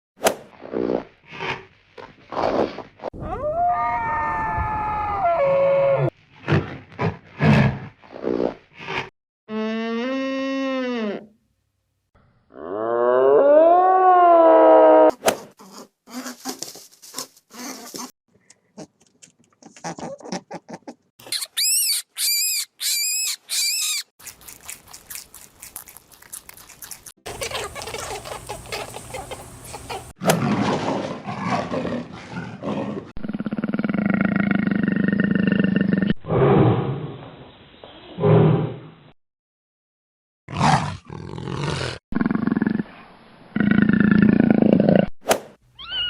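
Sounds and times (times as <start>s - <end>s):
animal calls and roars: 0.5s - 9.1s, 27.3s - 39.0s, 45.8s - 46.0s
rising and falling animal calls: 21.2s - 24.1s, 45.8s - 46.0s.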